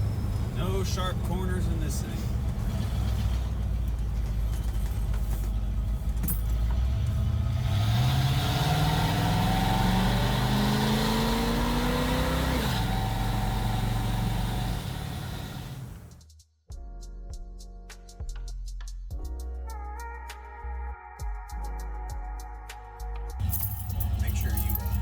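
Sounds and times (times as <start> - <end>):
car exhaust revving while driving: 0.0 - 16.1.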